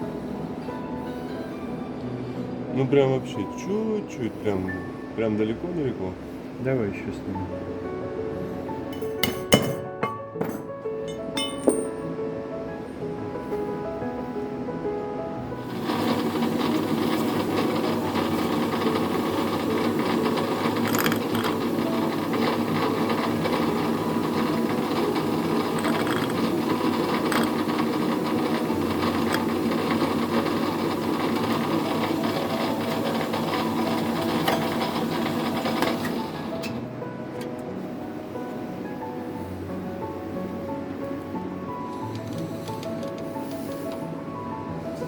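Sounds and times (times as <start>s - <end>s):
rapid mechanical clatter: 15.6s - 36.8s.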